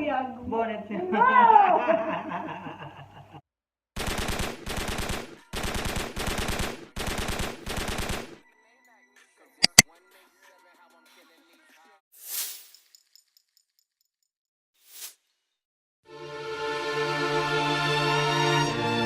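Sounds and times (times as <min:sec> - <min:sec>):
rapid-fire crackling bursts: 0:04.0 - 0:08.4
sharp clicks: 0:09.6 - 0:09.8.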